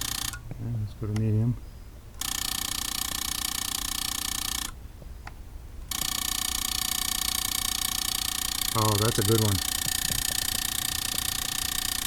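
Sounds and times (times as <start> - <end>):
ignition coil buzzing: 0.0 - 0.4, 5.9 - 12.0.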